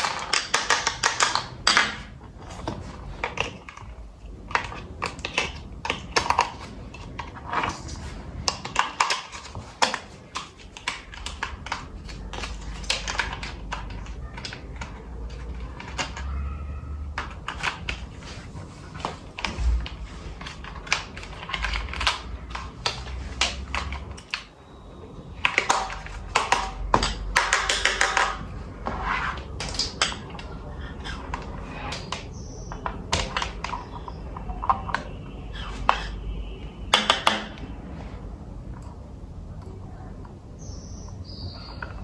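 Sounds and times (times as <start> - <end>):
plastic and cardboard crinkling: 0.0 - 24.5.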